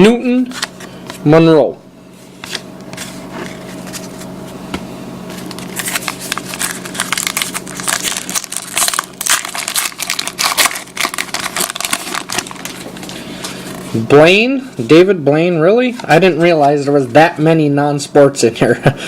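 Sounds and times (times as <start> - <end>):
faint steady hum: 0.0 - 19.0
wrapper crinkling and tearing: 5.4 - 13.1.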